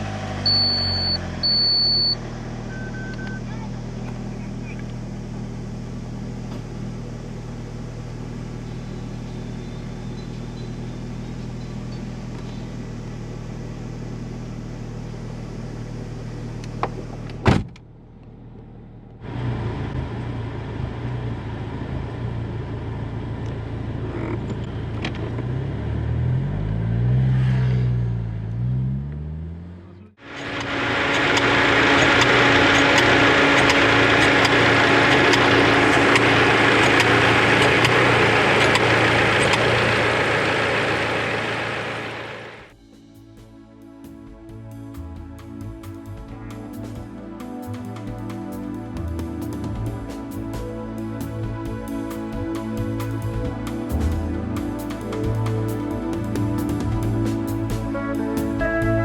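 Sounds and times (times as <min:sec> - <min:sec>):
engine revving: 0:00.0 - 0:05.6, 0:24.0 - 0:42.8, 0:44.5 - 0:59.0
loud harsh engine noise: 0:00.0 - 0:17.2, 0:30.0 - 0:42.9, 0:44.6 - 0:59.0
car engine running: 0:00.0 - 0:27.4, 0:28.0 - 0:59.0.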